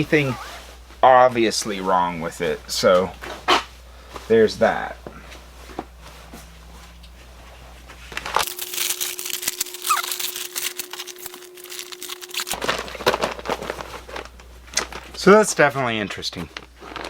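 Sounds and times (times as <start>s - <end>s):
curtain and plastic rustling: 5.5s - 17.0s.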